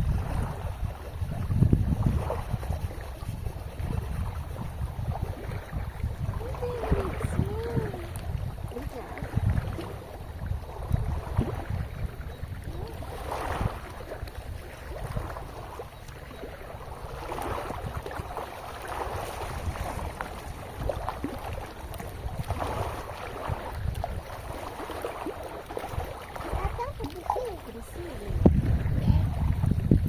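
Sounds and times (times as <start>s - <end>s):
rushing water: 0.0s - 30.0s
wind buffeting microphone: 0.0s - 30.0s.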